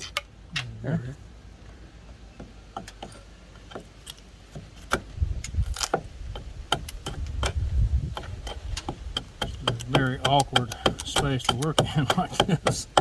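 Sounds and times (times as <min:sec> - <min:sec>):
hand tool knocking on timber: 0:08.8 - 0:13.0.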